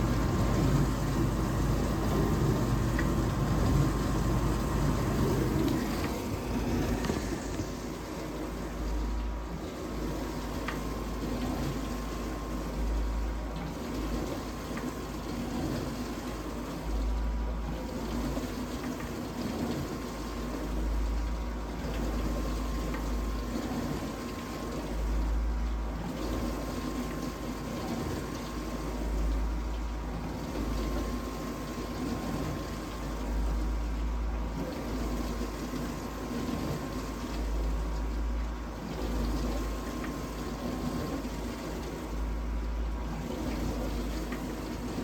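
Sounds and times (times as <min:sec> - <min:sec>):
water spraying inside dishwasher: 0:00.0 - 0:09.4
dishwasher pump motor humming: 0:00.0 - 0:45.0.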